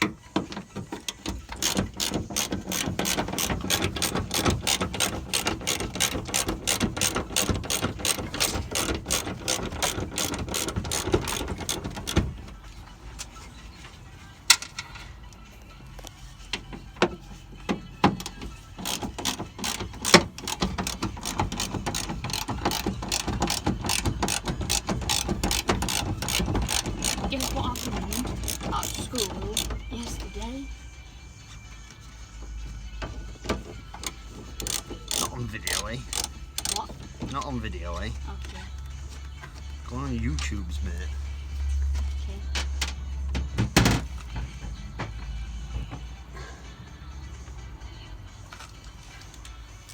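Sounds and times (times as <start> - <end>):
socket ratchet clicking: 1.1 - 12.3, 18.1 - 29.8, 33.9 - 37.0.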